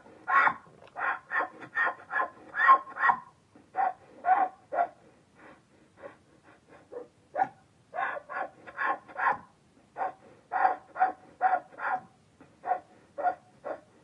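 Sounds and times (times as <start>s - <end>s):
donkey wheezy breathing: 4.9s - 7.1s.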